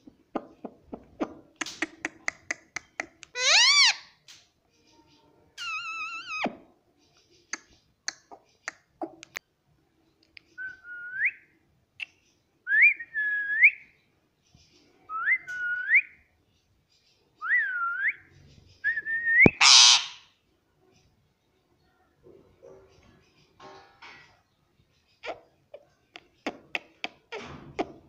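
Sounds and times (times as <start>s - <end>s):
parrot squawk: 3.3s - 4.1s, 19.6s - 20.3s.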